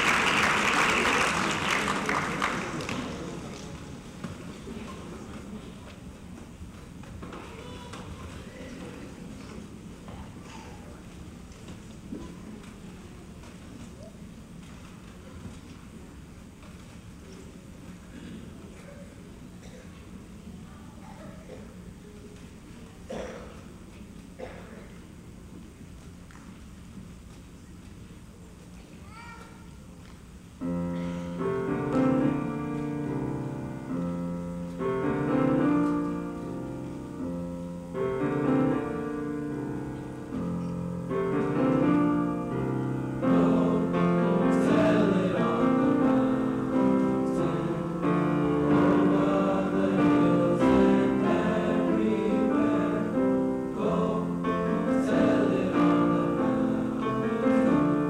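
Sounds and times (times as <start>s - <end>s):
piano accompaniment: 30.6s - 58.0s
choir singing: 41.2s - 58.0s.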